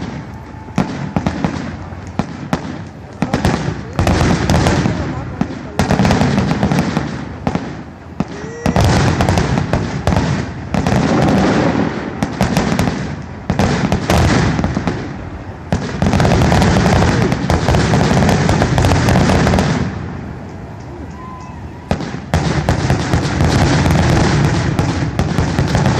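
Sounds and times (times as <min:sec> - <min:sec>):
fireworks booming and crackling: 0:00.0 - 0:25.9.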